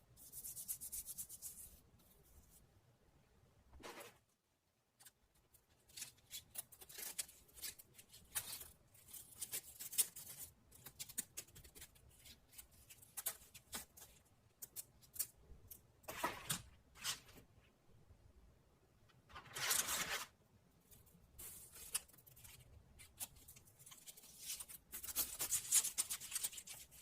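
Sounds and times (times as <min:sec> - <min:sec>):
crackling and rustling handling: 0:04.9 - 0:17.7, 0:19.0 - 0:27.0.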